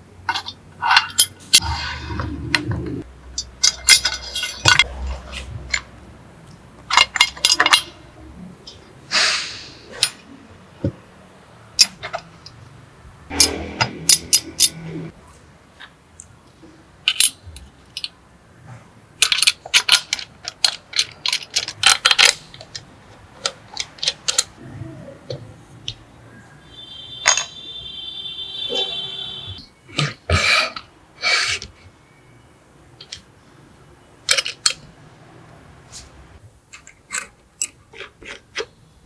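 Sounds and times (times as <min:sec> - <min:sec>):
clicks of small hard parts: 0:17.1 - 0:18.2, 0:19.2 - 0:24.6, 0:34.2 - 0:34.9.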